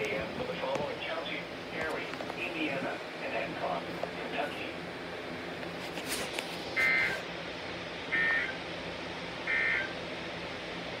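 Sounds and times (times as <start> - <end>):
background hiss and hum: 0.0 - 11.0
digital data tone bursts: 8.1 - 8.6, 9.5 - 10.0.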